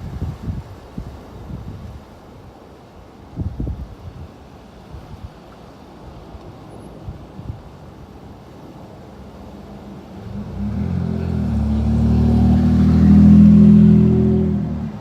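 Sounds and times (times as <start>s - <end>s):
vehicle driving past: 9.3s - 15.0s.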